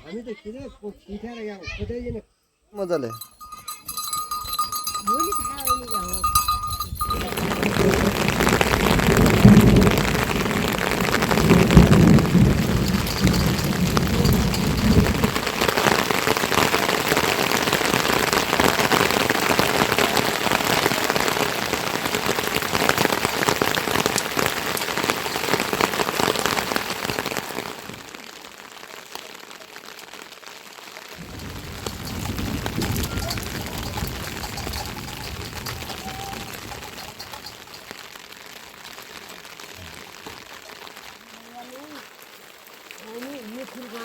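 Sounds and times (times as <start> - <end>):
heavy rain hissing: 7.0 - 44.0.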